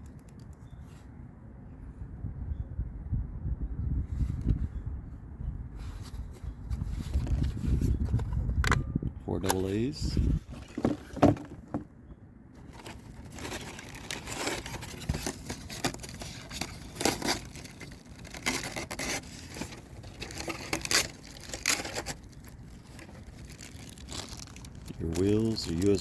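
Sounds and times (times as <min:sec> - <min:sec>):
box packaging being rummaged: 0:10.5 - 0:11.9, 0:12.6 - 0:26.0.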